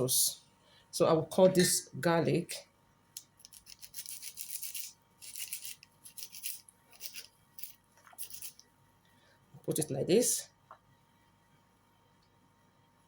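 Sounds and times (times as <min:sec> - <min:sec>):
knife scraping garlic: 0:03.4 - 0:08.6.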